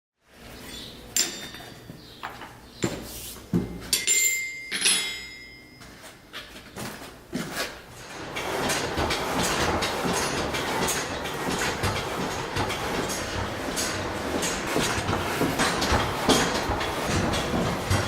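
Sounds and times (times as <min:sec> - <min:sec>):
metal knocks and clanks: 0:08.0 - 0:18.0.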